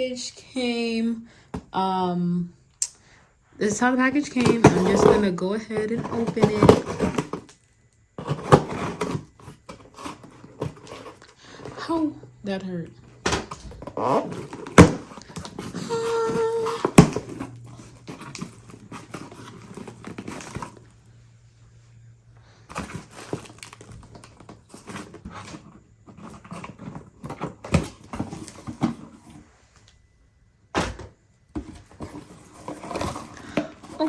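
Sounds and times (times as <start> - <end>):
package rustling and tearing: 13.8 - 20.8, 22.7 - 29.1.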